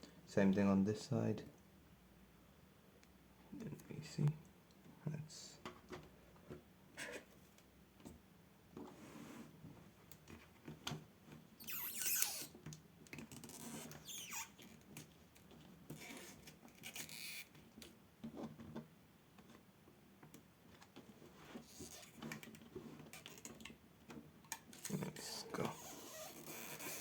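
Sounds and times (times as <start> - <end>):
tape scratching and rubbing: 11.6 - 12.5, 13.3 - 14.8, 15.9 - 17.6, 21.5 - 23.7, 24.7 - 27.0.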